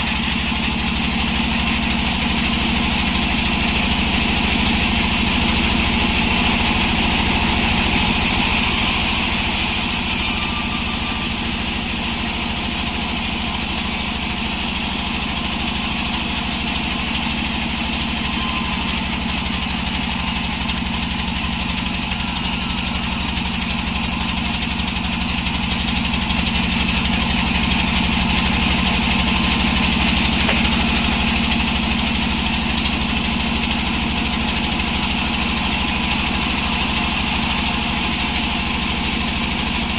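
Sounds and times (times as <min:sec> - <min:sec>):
engine-driven sawmill running: 0:00.0 - 0:39.9.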